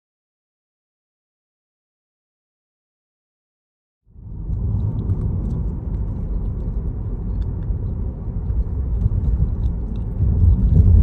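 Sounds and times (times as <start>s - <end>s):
car interior road rumble: 4.1s - 11.0s.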